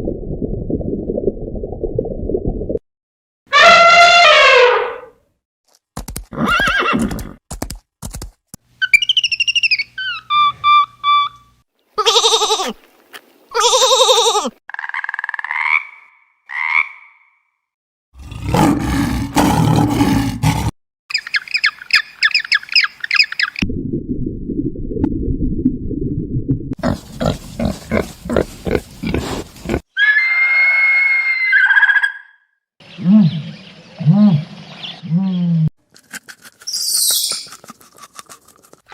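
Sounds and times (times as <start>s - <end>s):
sliding animal calls: 26.8s - 30.1s.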